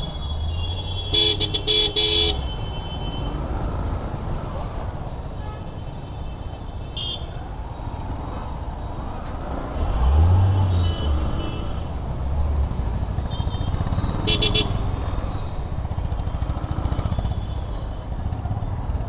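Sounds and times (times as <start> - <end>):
road noise: 0.0 - 19.0
vehicle horn toot: 0.4 - 3.3, 10.7 - 11.8, 13.3 - 14.9.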